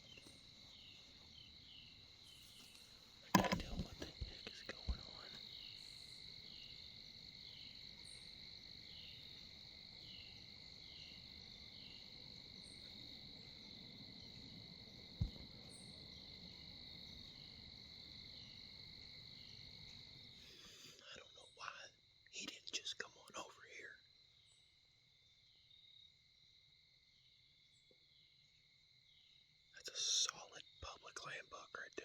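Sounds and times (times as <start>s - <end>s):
crickets chirping: 0.0s - 32.0s
soft thumps: 3.3s - 4.4s.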